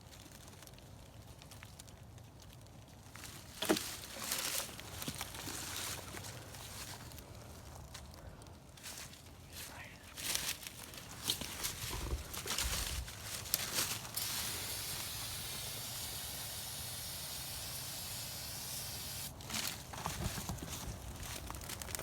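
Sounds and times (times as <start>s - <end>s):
aerosol can spraying hiss: 14.2s - 19.3s
crackling: 19.2s - 22.0s.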